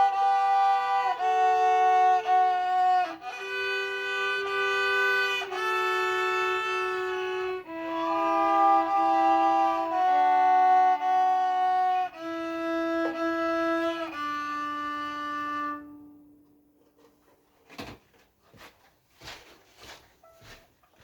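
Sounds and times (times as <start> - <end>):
solo violin playing: 0.0 - 16.5.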